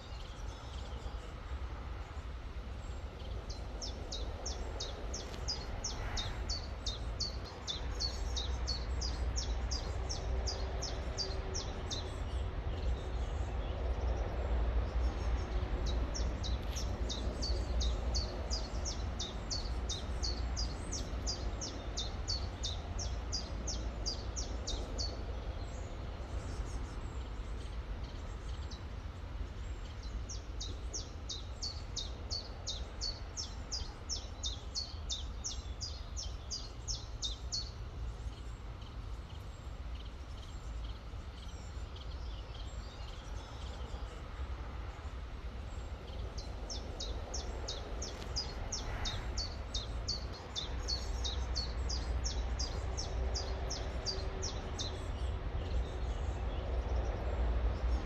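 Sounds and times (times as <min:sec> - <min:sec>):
small bird singing: 0:02.8 - 0:13.7, 0:15.0 - 0:28.9, 0:45.7 - 0:57.2.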